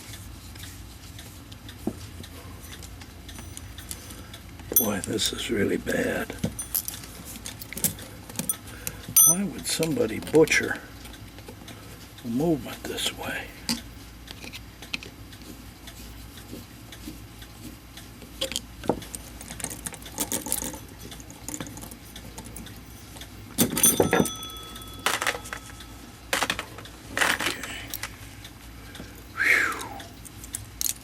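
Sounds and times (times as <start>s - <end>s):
metallic clatter and ring: 2.6s - 5.3s, 6.5s - 9.5s, 19.2s - 28.0s
small metal parts clinking: 2.6s - 5.3s, 6.4s - 9.5s, 19.2s - 28.1s, 30.2s - 31.0s.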